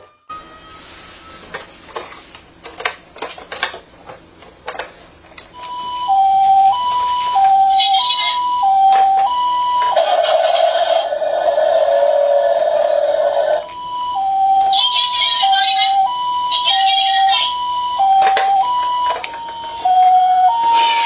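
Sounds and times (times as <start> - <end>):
buzzy electronic toy sound: 5.6 - 21.0
toy two-tone siren: 5.6 - 21.0.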